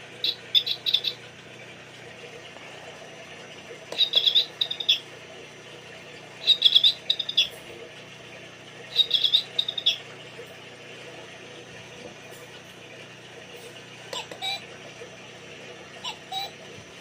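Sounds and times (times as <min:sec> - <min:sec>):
recorded songbird chirp: 0:00.2 - 0:01.2, 0:03.9 - 0:05.0, 0:06.4 - 0:07.6, 0:08.9 - 0:10.0, 0:16.0 - 0:16.6.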